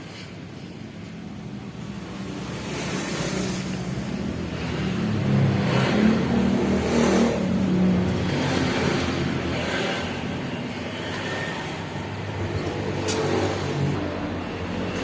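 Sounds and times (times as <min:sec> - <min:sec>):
two-stroke engine revving: 0:02.2 - 0:12.3.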